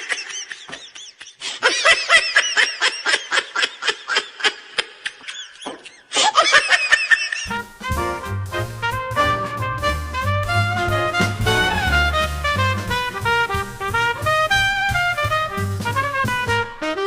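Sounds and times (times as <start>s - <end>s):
high-pitched laughter: 0.0s - 7.5s
swing music with brass: 7.5s - 17.0s.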